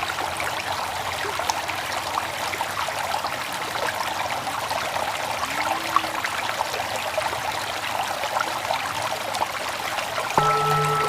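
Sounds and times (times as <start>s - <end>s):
trickling stream of water: 0.0s - 11.0s
bell ringing: 10.4s - 11.0s.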